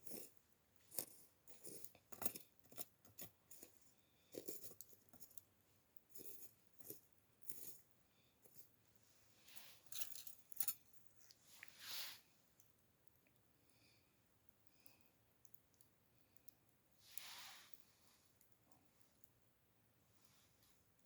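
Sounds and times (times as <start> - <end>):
embers being raked: 11.5 - 12.2, 17.0 - 17.8.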